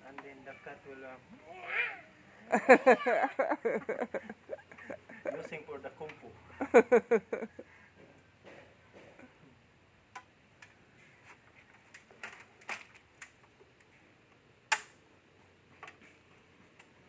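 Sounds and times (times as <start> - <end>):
small clicks and knocks: 15.7 - 17.0.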